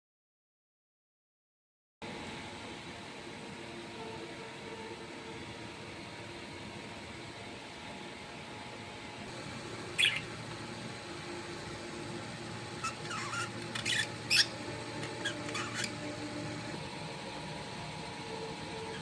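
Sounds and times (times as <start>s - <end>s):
steady background hum: 2.0s - 19.0s
small animal chirps and squeaks: 9.9s - 10.3s, 12.8s - 16.3s.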